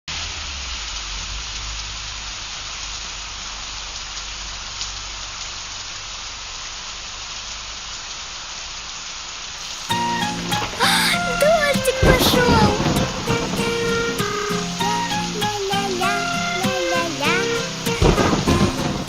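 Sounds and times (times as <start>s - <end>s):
steady rain hiss: 0.1s - 19.0s
raindrops ticking: 9.6s - 19.0s.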